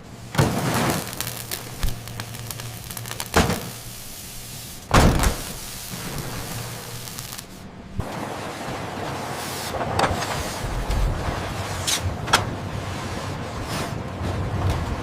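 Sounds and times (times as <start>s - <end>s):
steady low machinery hum: 0.0s - 15.0s
machinery clunks: 4.9s - 6.4s.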